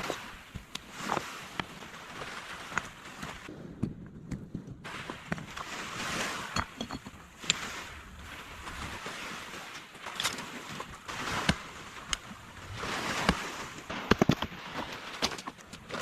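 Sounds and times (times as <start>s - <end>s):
water washing in swells: 0.0s - 3.7s, 4.7s - 16.0s.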